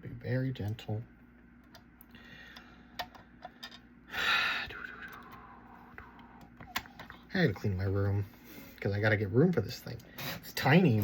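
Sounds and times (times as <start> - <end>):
clicks and taps of plastic parts: 2.6 - 3.8
person exhaling: 4.1 - 6.4.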